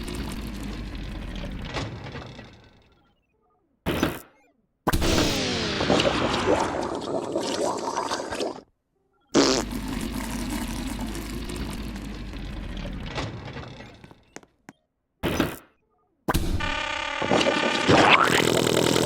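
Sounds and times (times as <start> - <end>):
machine spluttering burst: 4.9 - 8.6.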